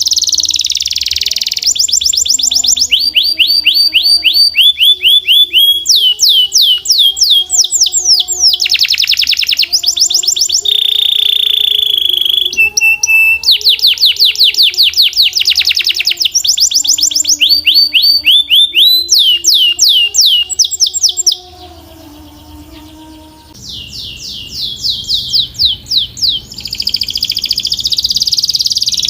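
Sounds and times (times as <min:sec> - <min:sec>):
canary singing: 0:00.0 - 0:29.0.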